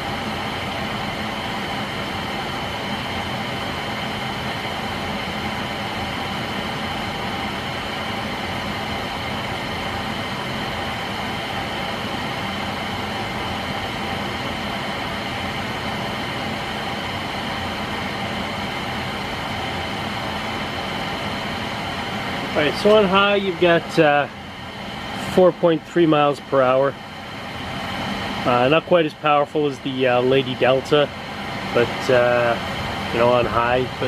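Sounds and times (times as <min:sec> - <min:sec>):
ceiling fan air rush: 0:00.0 - 0:34.0
faint fan hum: 0:00.0 - 0:34.0.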